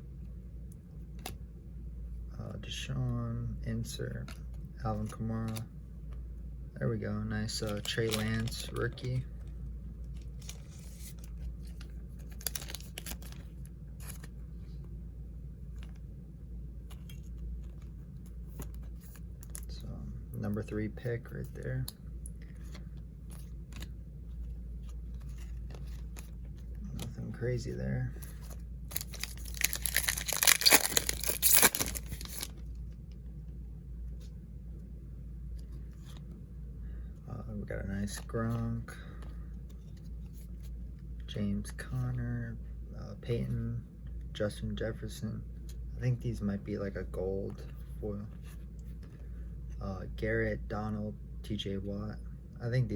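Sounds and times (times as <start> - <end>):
low background hum: 0.0 - 52.9
card pack wrapper tearing: 7.4 - 9.2, 12.2 - 14.3, 28.9 - 32.6.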